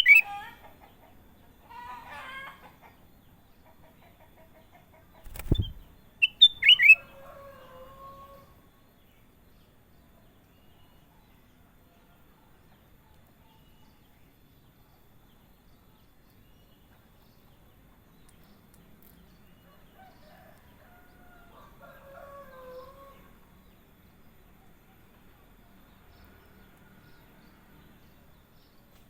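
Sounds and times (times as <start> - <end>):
high bird chirps: 0.0 - 0.2, 5.3 - 7.0
distant rooster crowing: 6.6 - 8.7, 19.7 - 23.4.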